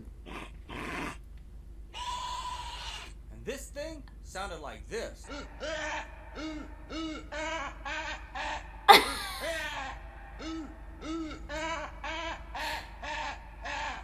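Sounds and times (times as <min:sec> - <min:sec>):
shrill descending cry: 0:05.2 - 0:14.0.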